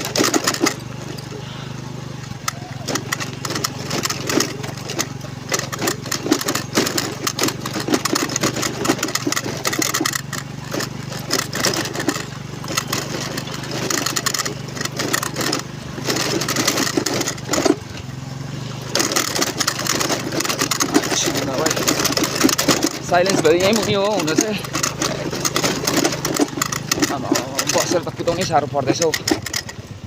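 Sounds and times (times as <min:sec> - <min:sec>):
knocks and rattles: 0:00.0 - 0:18.2, 0:18.8 - 0:30.0
motorcycle engine running: 0:00.0 - 0:30.0.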